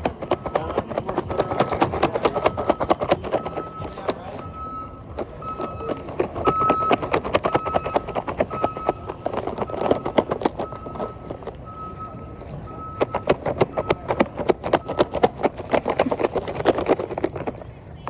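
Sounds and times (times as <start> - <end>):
clatter of sharp clicks: 0.0 - 11.6, 12.4 - 17.7
high electronic beeping: 0.0 - 15.6.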